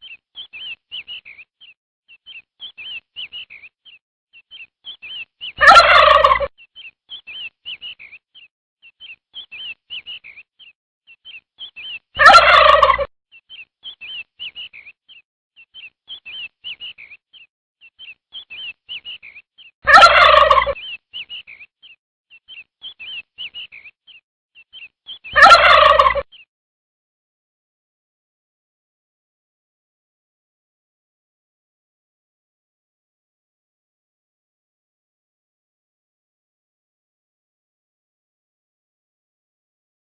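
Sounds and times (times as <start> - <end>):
chicks cheeping: 0.0 - 26.5.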